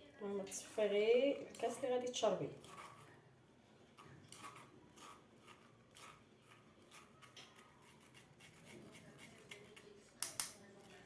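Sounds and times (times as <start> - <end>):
scraping in a strainer: 4.0 - 9.9.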